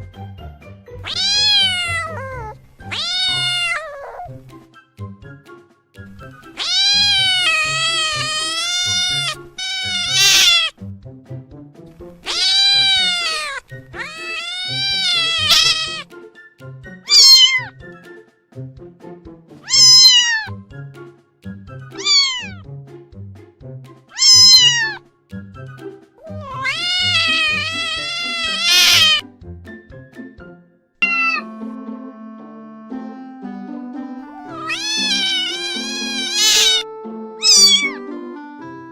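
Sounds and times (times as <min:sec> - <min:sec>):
soft background music: 0:00.0 - 0:38.9
cat meowing: 0:01.0 - 0:04.4, 0:06.5 - 0:10.7, 0:12.2 - 0:16.0, 0:17.1 - 0:17.7, 0:19.6 - 0:20.6, 0:22.0 - 0:22.6, 0:24.1 - 0:25.0, 0:26.2 - 0:29.2, 0:31.0 - 0:31.5, 0:34.4 - 0:38.0.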